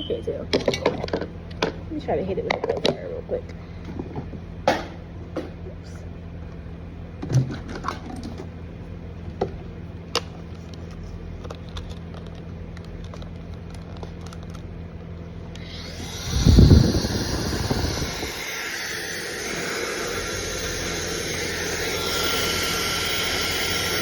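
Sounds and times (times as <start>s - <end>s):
hair dryer blowing air: 15.6s - 24.0s
loud low gust: 15.8s - 19.8s.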